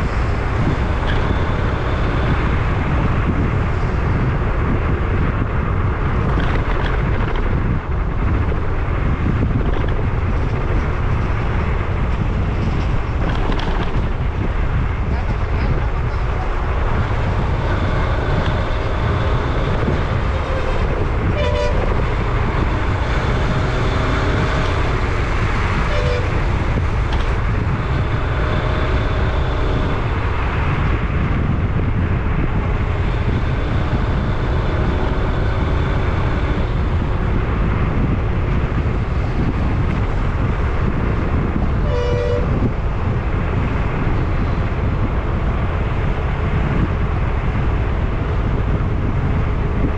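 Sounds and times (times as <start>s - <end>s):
vehicle running on highway: 0.0s - 49.9s
wind noise: 0.0s - 49.9s
horn toots: 17.6s - 24.9s, 25.8s - 27.4s, 41.8s - 42.7s.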